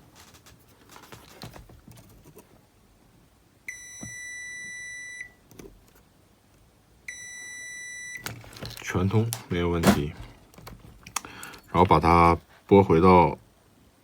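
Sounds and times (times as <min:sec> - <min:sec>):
multimeter continuity beeps: 0:03.7 - 0:05.4, 0:07.1 - 0:08.3.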